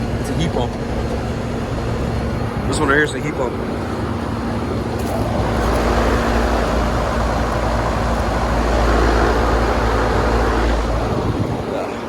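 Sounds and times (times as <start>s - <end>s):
compressor hum: 0.0s - 12.0s
condenser fan airflow: 0.0s - 12.0s.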